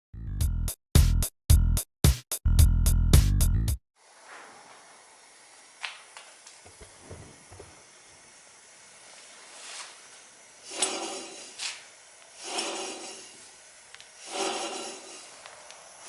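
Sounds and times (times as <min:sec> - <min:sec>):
faint steady hiss: 0:04.0 - 0:14.3.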